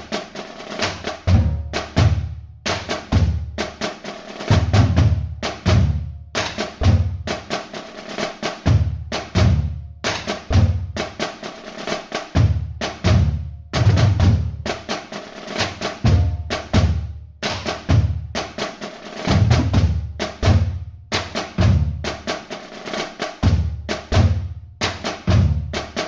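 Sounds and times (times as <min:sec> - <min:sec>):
snare drum hits: 0:00.0 - 0:26.0
bass drum thumps: 0:01.1 - 0:03.6, 0:04.5 - 0:07.3, 0:08.7 - 0:11.0, 0:12.4 - 0:14.7, 0:16.0 - 0:17.1, 0:19.3 - 0:22.0.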